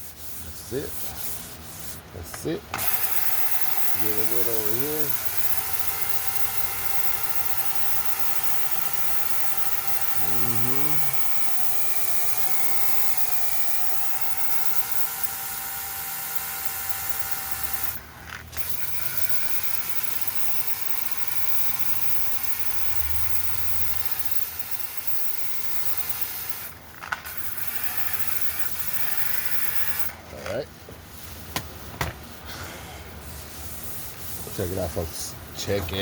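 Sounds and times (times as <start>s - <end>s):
rotary polisher sanding filler: 0.0s - 17.9s.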